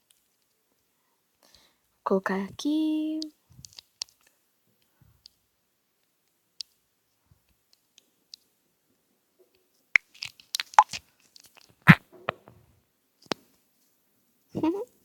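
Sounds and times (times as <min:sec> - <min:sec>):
rustling crackles: 0:10.0 - 0:12.5.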